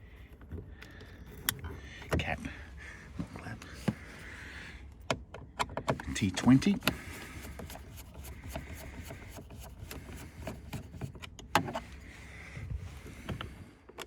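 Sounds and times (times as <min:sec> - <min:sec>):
screw scraping: 0:06.8 - 0:12.0.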